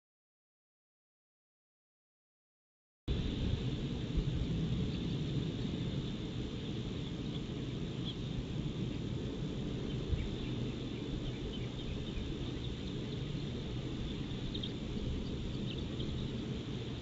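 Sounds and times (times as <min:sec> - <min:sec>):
wind rumble: 0:03.1 - 0:17.0
faint high chirps: 0:09.8 - 0:17.0.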